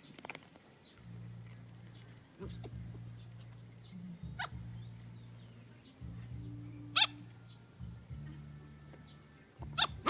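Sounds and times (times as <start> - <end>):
low steady hum: 0.6 - 10.0
dog yelping: 9.8 - 10.0.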